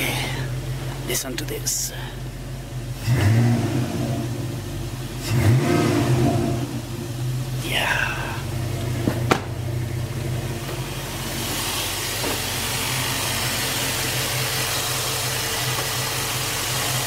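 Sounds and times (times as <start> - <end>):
car engine idling: 0.0 - 17.0
hiss: 11.0 - 17.0.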